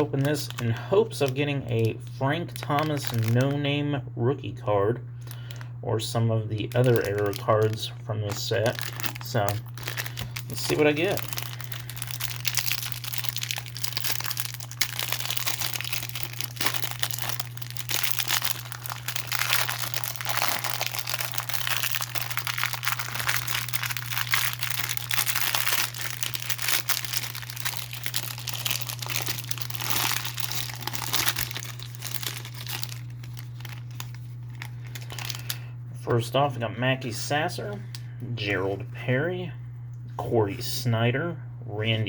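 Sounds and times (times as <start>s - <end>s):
plastic wrapper crinkling and tearing: 0.0s - 3.7s, 5.1s - 5.8s, 6.4s - 35.7s
steady low hum: 0.0s - 42.0s.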